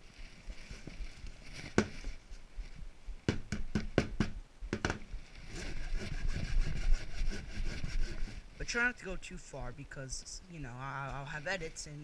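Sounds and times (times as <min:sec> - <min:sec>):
sharp knocks on wood: 0:03.3 - 0:05.1
hand sanding wood: 0:05.5 - 0:08.4.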